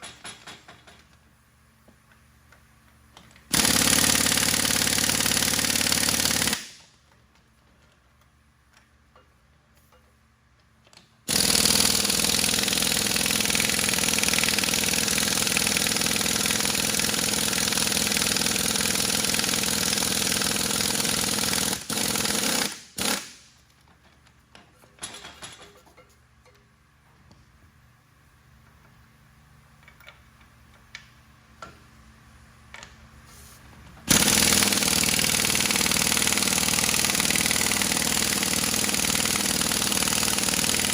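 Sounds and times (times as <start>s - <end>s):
power tool running: 3.5s - 6.8s, 11.3s - 23.4s, 34.1s - 40.9s.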